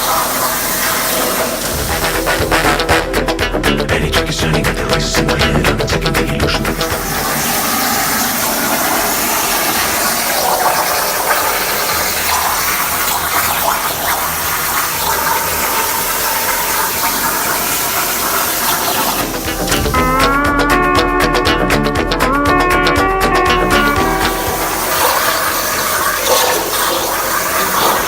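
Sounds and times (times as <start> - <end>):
plasma cutting torch hissing: 24.4 - 28.0.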